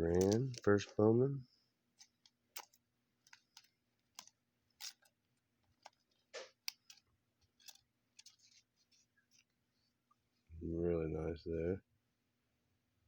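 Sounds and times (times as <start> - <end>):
trading cards rustling in plastic sleeves: 0.0 - 1.2, 1.9 - 9.6.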